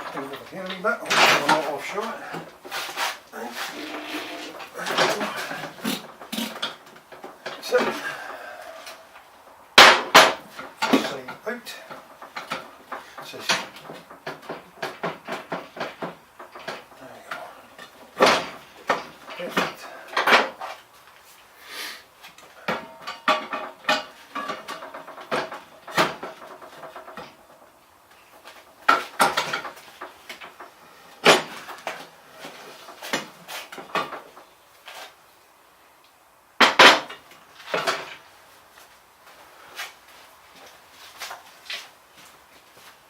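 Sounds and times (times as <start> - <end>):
metal tools clanking: 3.4 - 8.3.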